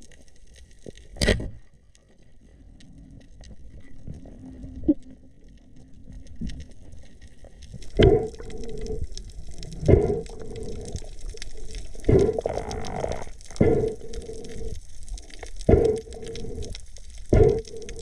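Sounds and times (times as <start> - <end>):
water gurgling and splashing: 3.6 - 18.0.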